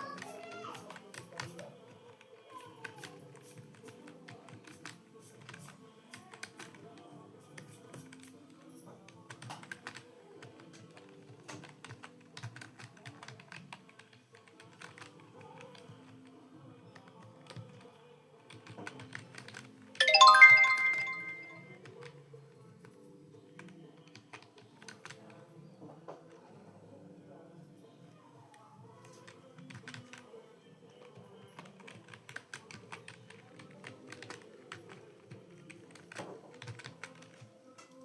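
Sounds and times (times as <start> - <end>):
soft background music: 0.0 - 38.0
computer keyboard typing: 0.1 - 2.2, 2.9 - 7.0, 9.3 - 16.2, 17.0 - 21.7, 23.6 - 25.3, 29.1 - 30.3, 31.6 - 37.5
loud bright chime: 20.0 - 21.6.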